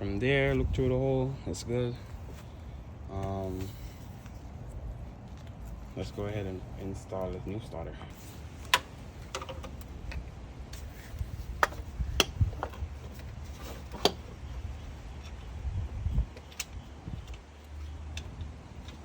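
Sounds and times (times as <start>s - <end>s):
sharp clicks and knocks: 8.6s - 10.3s, 11.6s - 14.4s.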